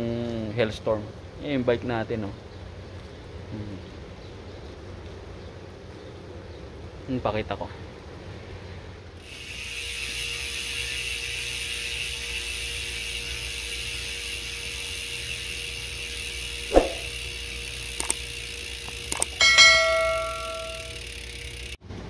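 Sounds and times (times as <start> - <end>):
bicycle freehub buzzing: 9.2 - 21.8
sharp knock: 16.7 - 17.1.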